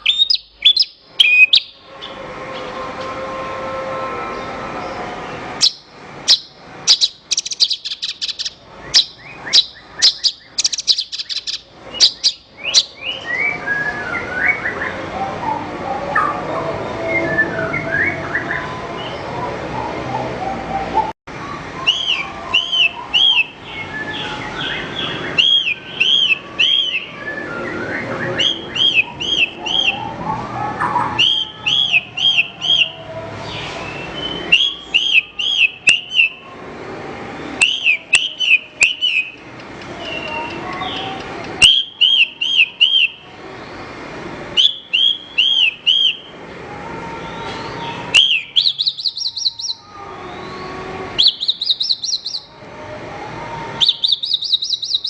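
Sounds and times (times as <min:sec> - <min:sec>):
bird twittering chirps: 0:00.0 - 0:02.1, 0:05.6 - 0:13.6, 0:48.2 - 0:50.5, 0:51.2 - 0:52.5, 0:53.8 - 0:55.0.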